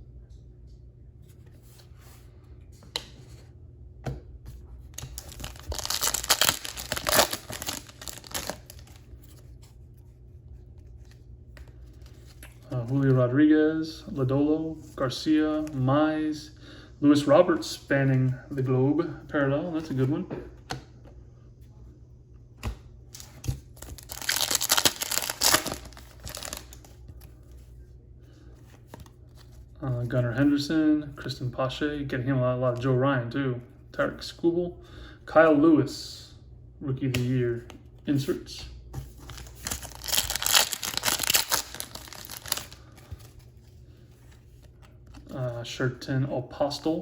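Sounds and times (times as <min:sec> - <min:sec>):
foil wrapper tearing and crinkling: 0:05.0 - 0:09.0, 0:23.8 - 0:26.9, 0:39.3 - 0:43.2.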